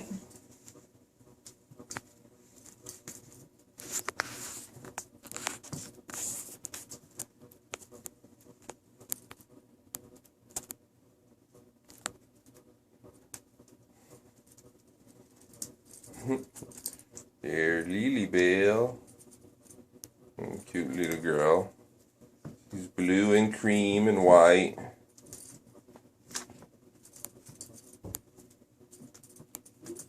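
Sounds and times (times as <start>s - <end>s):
rustling: 0.0s - 10.8s
kitten paws clicking and scratching: 0.0s - 23.5s, 25.0s - 30.0s.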